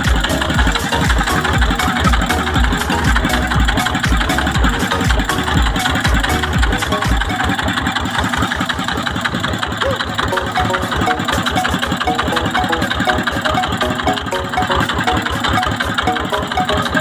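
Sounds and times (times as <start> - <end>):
background music: 0.0 - 8.5, 9.8 - 17.0
boat engine chugging: 0.0 - 17.0.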